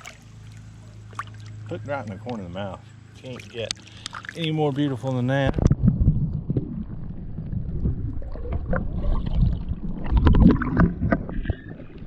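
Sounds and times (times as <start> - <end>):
splashing water: 0.0 - 2.4, 3.2 - 12.0
microphone handling noise: 5.4 - 9.3
wind rumbling on microphone: 5.4 - 12.0.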